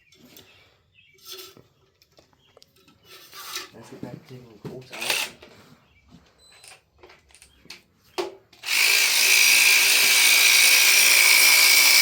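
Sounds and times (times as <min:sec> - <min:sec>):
cordless drill running: 0:05.0 - 0:05.4, 0:08.6 - 0:12.0.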